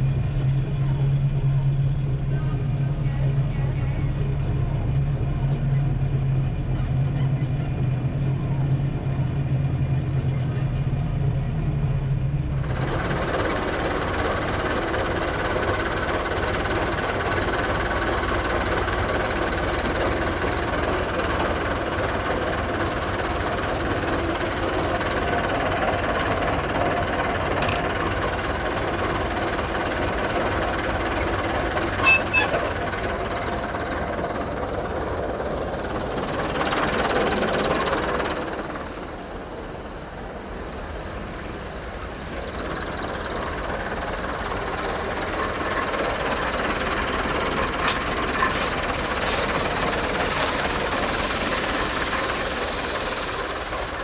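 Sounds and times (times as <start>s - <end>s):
tractor engine running: 11.9s - 54.0s
hiss: 45.4s - 54.0s.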